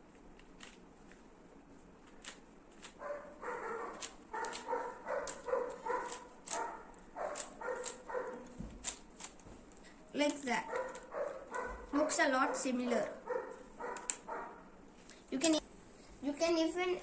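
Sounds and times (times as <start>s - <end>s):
small dog yapping: 3.0s - 8.5s, 10.6s - 14.6s.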